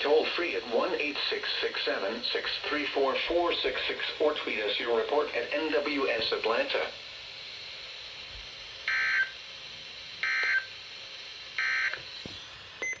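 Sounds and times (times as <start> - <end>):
radio hiss: 0.0 - 8.8.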